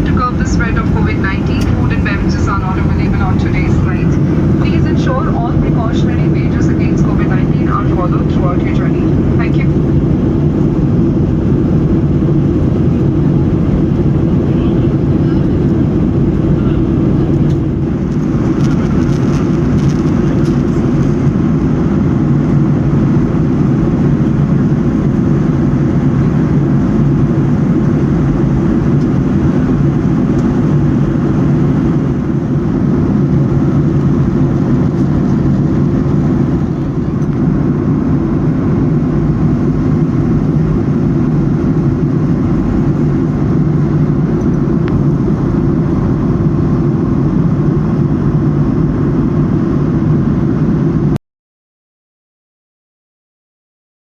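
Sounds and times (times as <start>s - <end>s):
rushing air: 0.0s - 5.1s, 8.7s - 23.6s
airliner engines droning: 0.0s - 51.2s.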